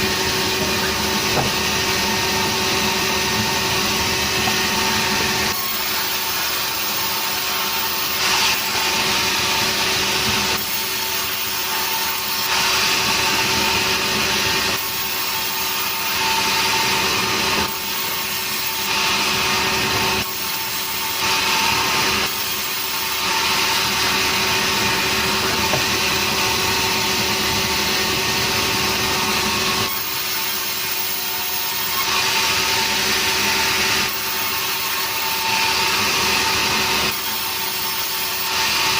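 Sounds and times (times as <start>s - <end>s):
sawmill saw cutting wood: 0.0s - 38.9s.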